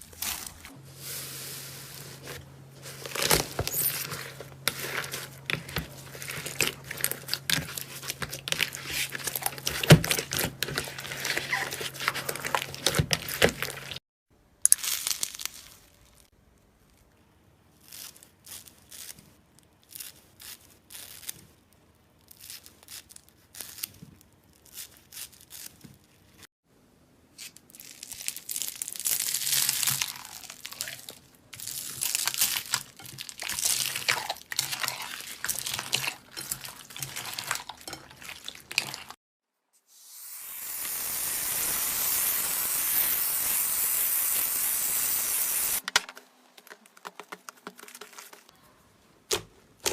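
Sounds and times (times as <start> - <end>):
slime crackling and popping: 14.6 - 16.3, 27.4 - 39.2.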